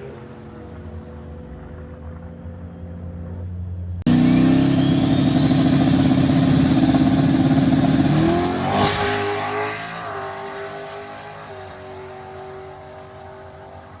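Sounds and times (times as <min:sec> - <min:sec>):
high whine rising in pitch: 0:04.1 - 0:10.6
car engine revving high: 0:04.1 - 0:13.1.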